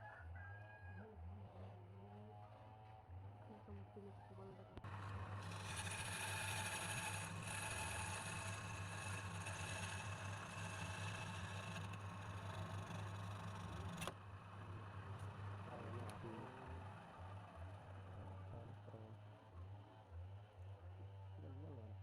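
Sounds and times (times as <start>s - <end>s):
wood lathe motor hum: 4.8s - 18.6s.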